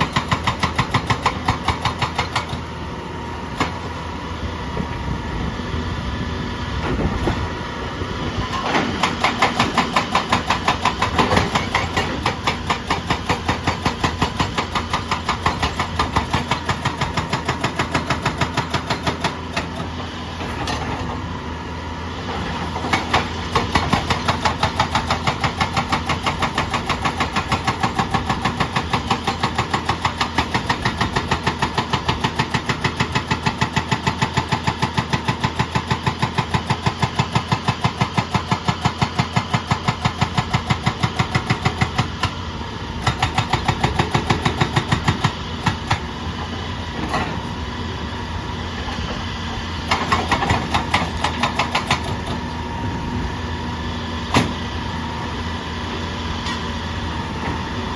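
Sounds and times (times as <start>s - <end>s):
hydraulic breaker hammering: 0.0s - 2.7s, 8.5s - 21.3s, 22.6s - 42.4s, 43.0s - 46.1s, 49.8s - 52.4s
excavator engine running: 0.0s - 57.9s.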